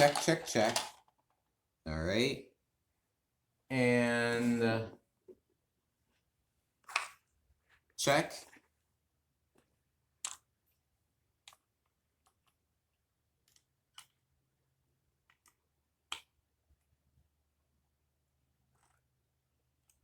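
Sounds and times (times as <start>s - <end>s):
plastic pieces clicking and tapping: 0.0s - 1.4s, 15.2s - 16.4s.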